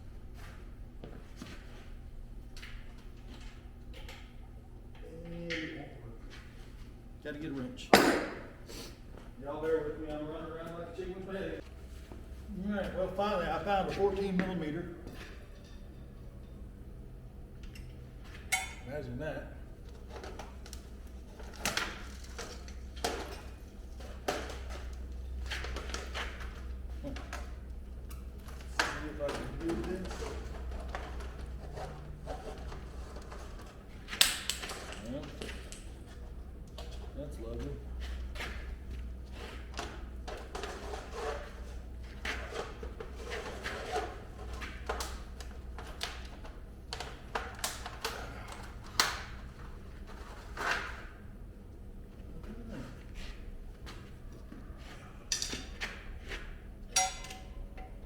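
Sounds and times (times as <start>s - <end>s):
hand tools clinking on metal: 56.9s - 58.0s.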